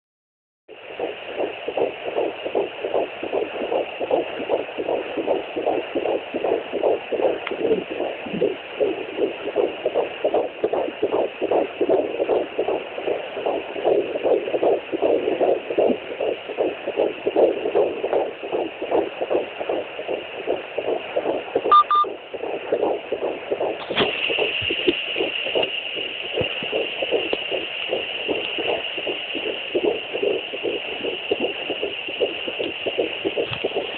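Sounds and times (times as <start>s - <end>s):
fetal heartbeat whooshing pulses: 0.7s - 33.9s
short electronic beep: 21.7s - 22.1s
steady hiss: 22.2s - 33.9s.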